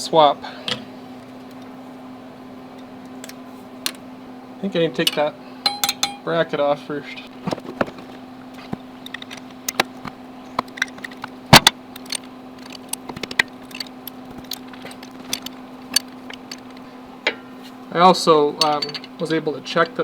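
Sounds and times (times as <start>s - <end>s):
faint steady hum: 0.0s - 20.0s
metal tools clinking on engine: 5.0s - 6.4s, 8.6s - 17.7s, 18.4s - 20.0s.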